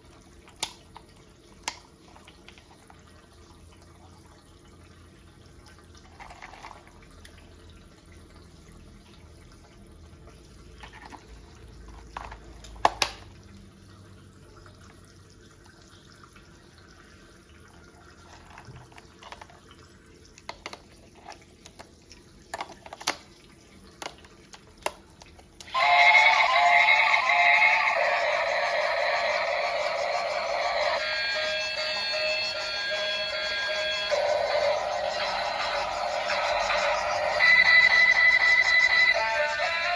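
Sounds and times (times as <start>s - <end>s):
plastic toy parts clicking: 0.6s - 1.8s, 22.5s - 23.3s.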